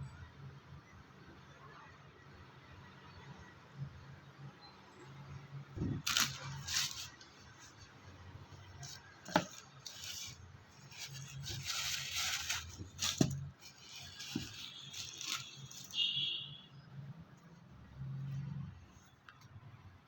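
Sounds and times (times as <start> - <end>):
packaging rustling: 5.8 - 7.9, 8.6 - 16.1.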